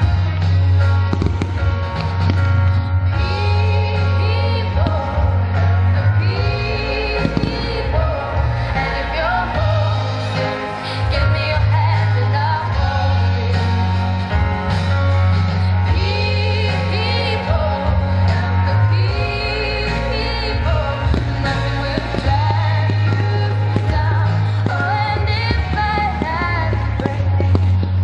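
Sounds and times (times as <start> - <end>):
pop music with sung vocals: 0.0 - 28.0.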